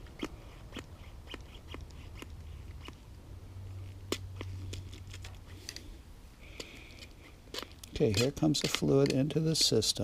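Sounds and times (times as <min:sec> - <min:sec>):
low steady hum: 0:00.0 - 0:10.0
hand pump clicks and taps: 0:07.6 - 0:10.0.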